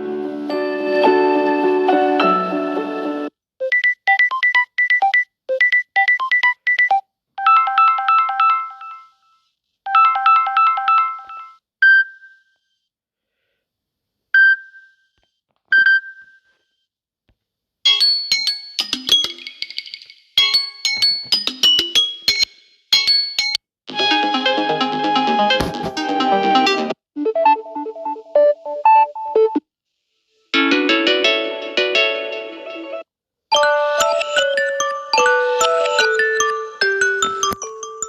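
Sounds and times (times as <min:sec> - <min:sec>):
phone ringtone tune: 0:03.6 - 0:09.3, 0:09.9 - 0:11.6, 0:33.5 - 0:38.0
busy chime: 0:33.6 - 0:38.0.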